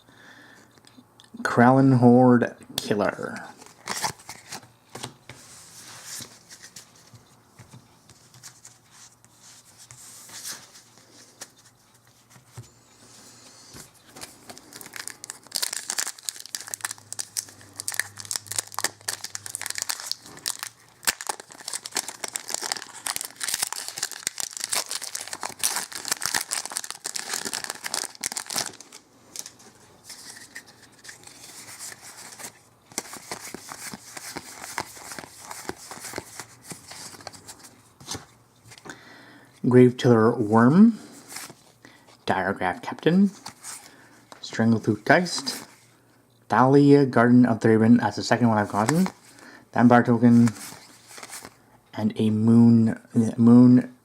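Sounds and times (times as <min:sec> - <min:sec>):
foil wrapper crinkling and tearing: 0:14.2 - 0:29.6.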